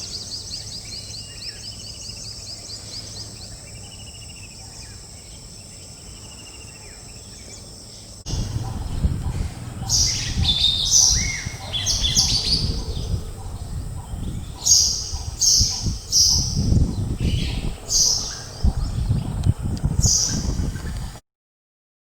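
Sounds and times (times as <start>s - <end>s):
bird calling high repeated notes: 8.3s - 13.2s
low rumble: 8.3s - 20.0s.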